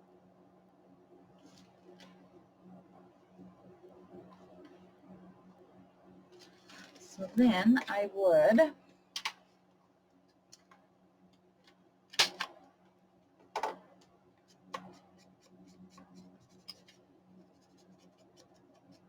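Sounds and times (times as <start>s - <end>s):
faint steady hum: 0.0s - 19.0s
light ticks and scratches: 14.4s - 19.0s.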